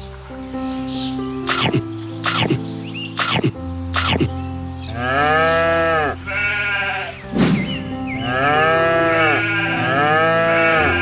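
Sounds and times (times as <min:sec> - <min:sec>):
background music: 0:00.0 - 0:11.0
sheep calling: 0:05.0 - 0:07.3, 0:08.2 - 0:11.0.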